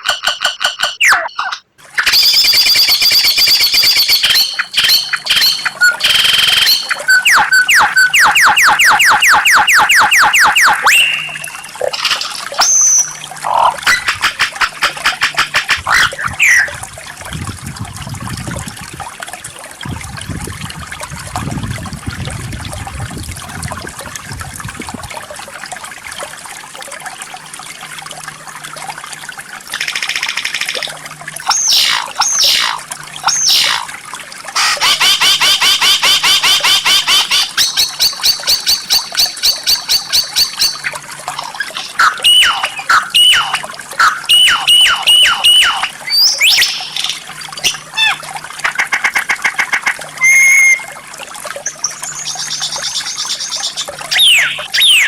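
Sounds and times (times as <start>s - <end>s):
trickle of running water: 0.0s - 55.0s
shama singing whistles: 1.0s - 13.3s, 15.9s - 16.7s, 37.6s - 47.1s, 50.2s - 51.0s, 51.8s - 55.0s.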